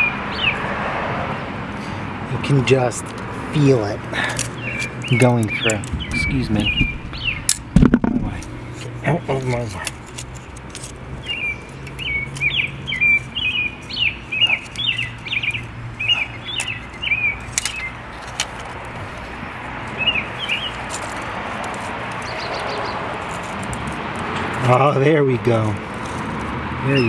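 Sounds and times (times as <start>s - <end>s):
small bird chirping: 4.4s - 7.7s, 11.1s - 18.2s, 19.9s - 21.4s, 22.1s - 23.4s.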